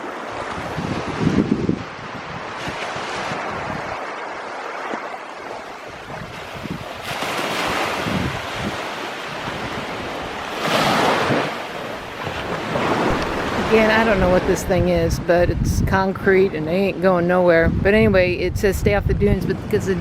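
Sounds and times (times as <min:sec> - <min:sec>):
wind buffeting microphone: 0:00.3 - 0:04.1, 0:05.8 - 0:20.0
surf breaking on beach: 0:07.2 - 0:15.7.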